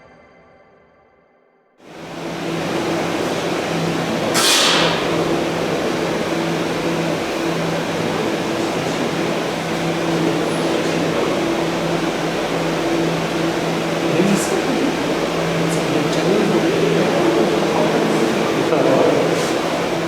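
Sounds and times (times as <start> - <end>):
ventilation machinery humming: 1.8 - 20.0.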